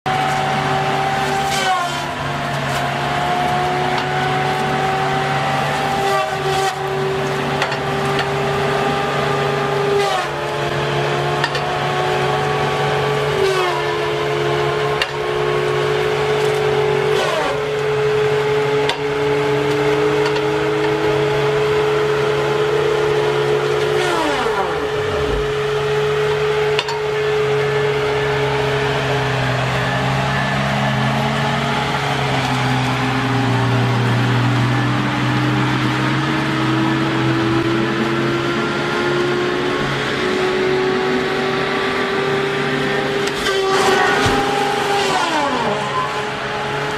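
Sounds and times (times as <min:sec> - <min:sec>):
machine motor humming: 0:22.8 - 0:26.6.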